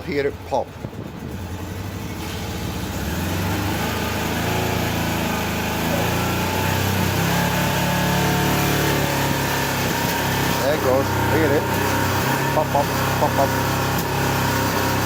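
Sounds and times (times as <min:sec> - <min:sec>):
motorcycle engine idling unevenly: 0:00.0 - 0:03.7, 0:09.0 - 0:15.0.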